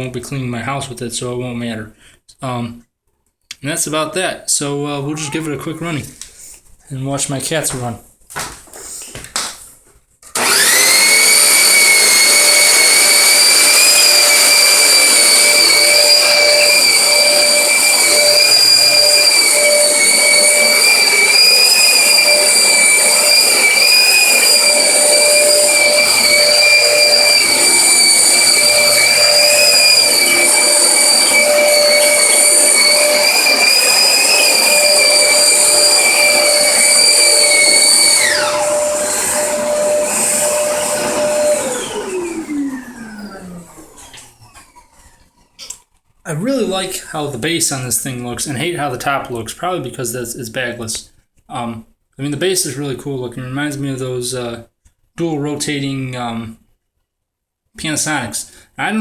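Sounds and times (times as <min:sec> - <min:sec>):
vacuum cleaner motor whining: 0:10.3 - 0:45.6.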